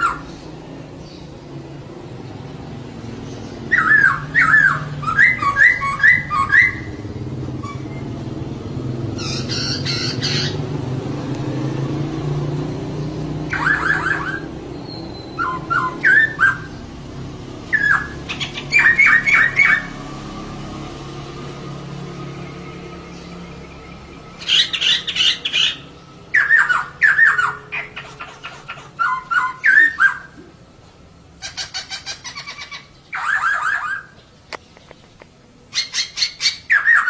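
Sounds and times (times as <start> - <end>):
bird chirping: 0.0 - 1.6, 2.4 - 30.5, 31.4 - 37.0
harsh rasping bird call: 3.7 - 7.9, 9.1 - 10.7, 13.4 - 16.8, 17.7 - 20.0, 24.3 - 30.4, 31.4 - 34.2.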